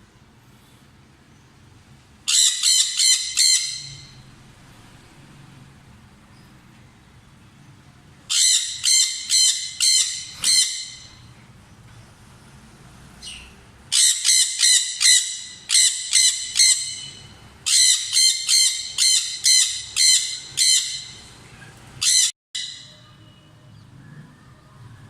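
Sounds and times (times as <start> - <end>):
parrot squawking: 2.3 - 4.2, 8.3 - 11.3, 13.2 - 21.4, 22.0 - 23.0.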